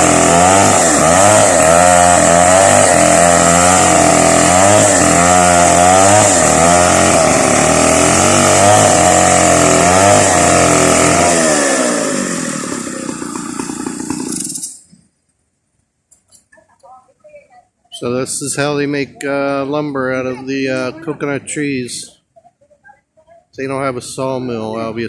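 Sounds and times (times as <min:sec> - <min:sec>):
chainsaw cutting wood: 0:00.0 - 0:15.1.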